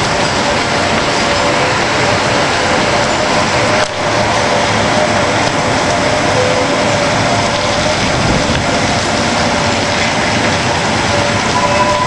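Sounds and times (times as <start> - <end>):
rain: 0.0 - 12.0
train passing: 0.0 - 12.0
faint held tones: 11.5 - 12.0.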